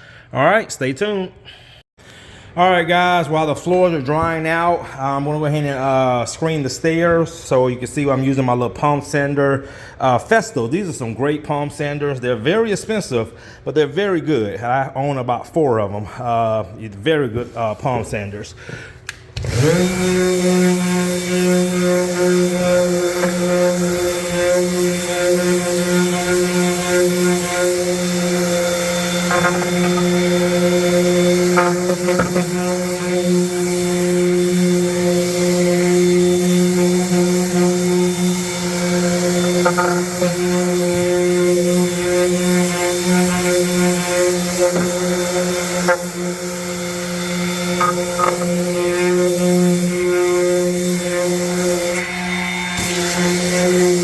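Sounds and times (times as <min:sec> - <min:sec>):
palm sander running: 0:19.4 - 0:54.0.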